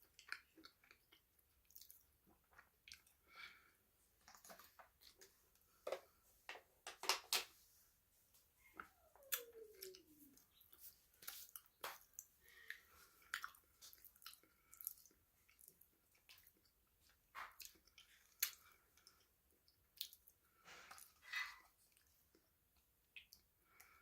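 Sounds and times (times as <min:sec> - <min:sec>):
chewing crunchy food: 0:00.0 - 0:03.2, 0:09.3 - 0:22.5.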